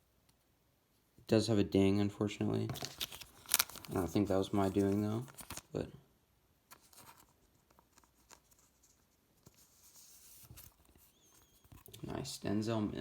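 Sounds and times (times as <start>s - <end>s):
trading cards rustling: 2.6s - 5.9s, 6.7s - 12.6s.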